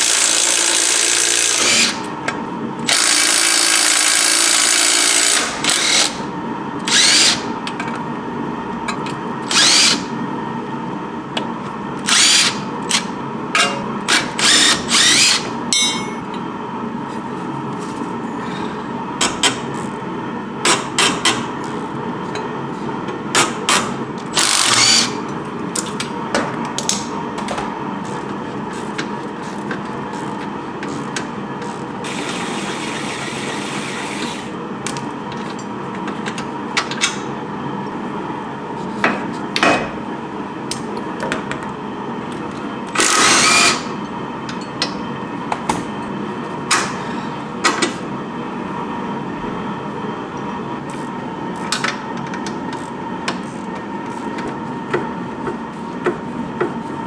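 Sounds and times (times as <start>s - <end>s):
hand tools knocking on metal: 15.7s - 16.4s.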